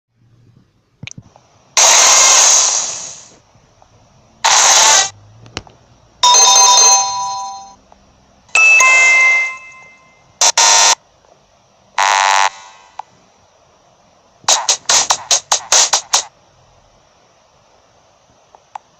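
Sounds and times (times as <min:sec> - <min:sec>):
chime-like tones: 0:06.2 - 0:07.8, 0:08.6 - 0:10.2
ding-dong doorbell: 0:06.2 - 0:07.8, 0:08.6 - 0:10.2.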